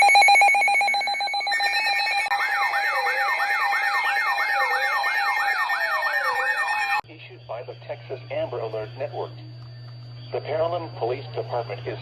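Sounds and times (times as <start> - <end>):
electronic siren falling sweeps: 0.0 - 7.0.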